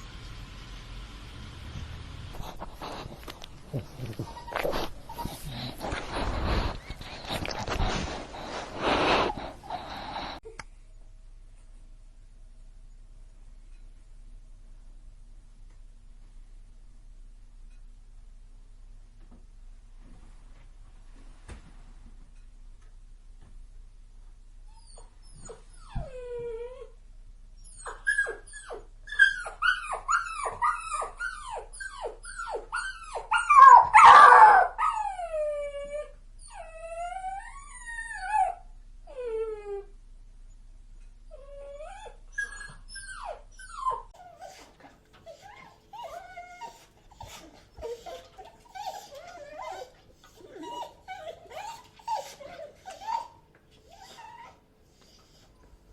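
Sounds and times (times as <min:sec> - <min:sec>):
puppy whimpering cries: 0:03.6 - 0:06.0, 0:27.6 - 0:39.9, 0:41.3 - 0:54.6
dogs whining and yipping: 0:03.6 - 0:08.5, 0:24.7 - 0:27.0, 0:27.6 - 0:39.9, 0:41.3 - 0:55.4.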